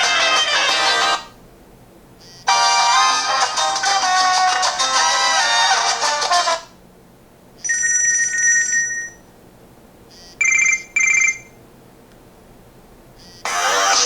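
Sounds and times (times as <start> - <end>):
trilling phone rings: 7.6 - 9.2, 10.2 - 11.6.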